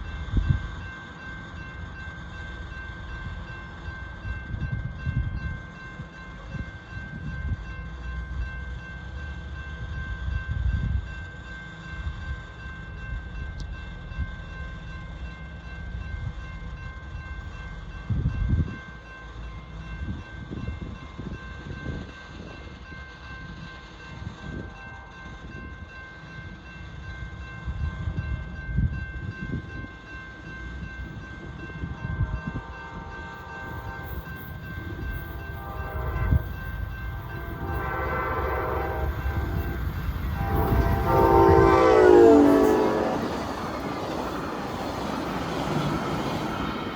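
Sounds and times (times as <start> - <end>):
low gusty rumble: 30.7 - 46.9
train horn: 31.9 - 43.8.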